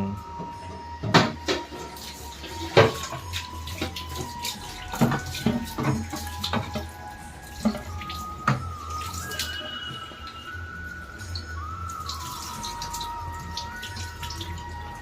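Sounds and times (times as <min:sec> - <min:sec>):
water running from a tap: 0:01.2 - 0:15.0.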